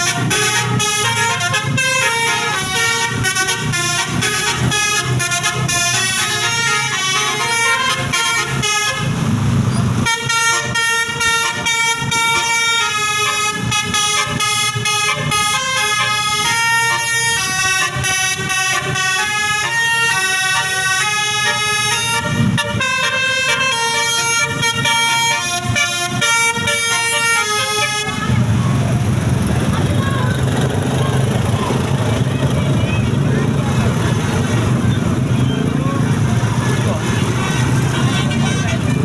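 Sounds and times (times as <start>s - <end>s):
musical bus horn tune: 0.0s - 9.4s, 10.0s - 28.6s, 37.1s - 39.0s.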